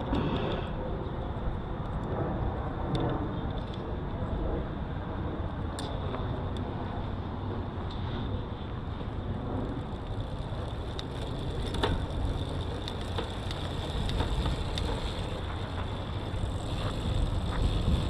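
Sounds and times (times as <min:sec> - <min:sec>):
wind hiss: 0:07.2 - 0:18.0
bicycle chain running: 0:08.0 - 0:18.0
derailleur clicks: 0:09.7 - 0:18.0.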